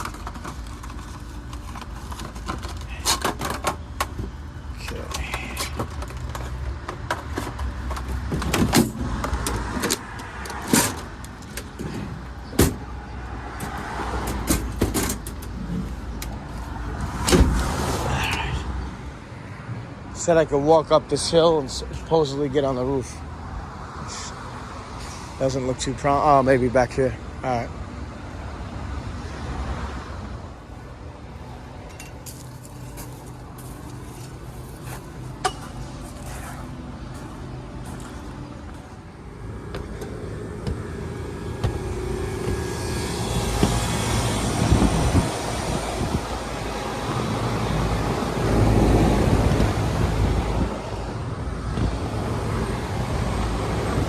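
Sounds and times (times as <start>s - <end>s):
irregular knocks and clatter: 0.0s - 12.8s
steady low rumble: 30.6s - 54.0s.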